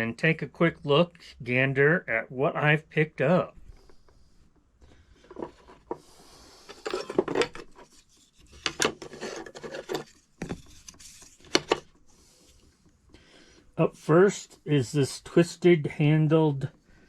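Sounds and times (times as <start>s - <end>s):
tools scraping on a surface: 5.2s - 11.8s
metal tools clinking: 6.6s - 7.8s.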